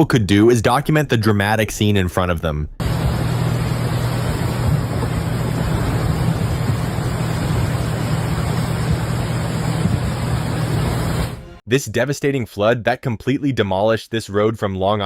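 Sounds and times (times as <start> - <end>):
rushing floodwater roar: 2.8 - 11.4.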